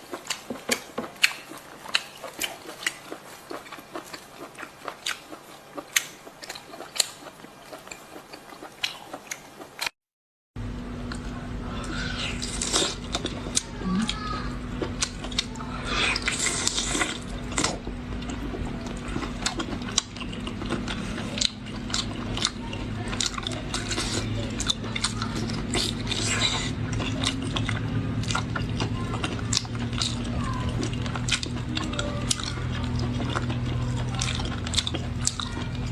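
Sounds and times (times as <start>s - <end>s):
chewing and biting: 0.0s - 10.0s, 11.9s - 35.9s
low hum: 10.6s - 35.9s.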